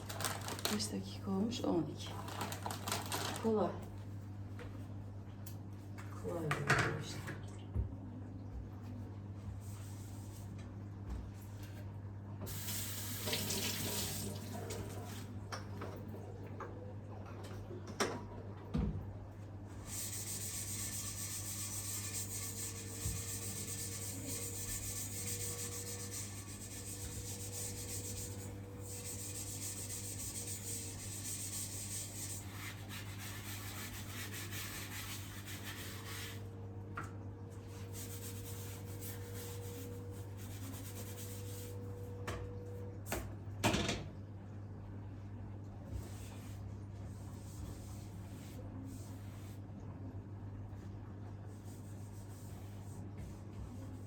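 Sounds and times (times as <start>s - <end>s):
tap water running into sink: 12.5s - 16.0s.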